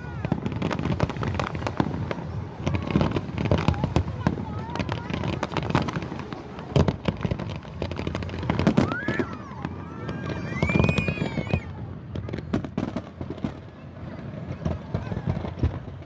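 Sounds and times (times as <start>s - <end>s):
fireworks bangs and crackles: 0.0s - 16.0s
rising and falling whistles: 10.2s - 11.7s.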